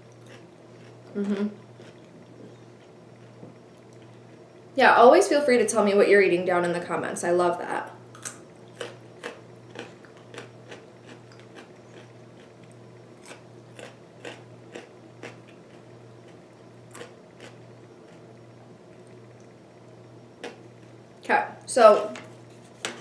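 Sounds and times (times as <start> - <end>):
person chewing crunchy food: 0.0 - 4.4, 8.1 - 18.4.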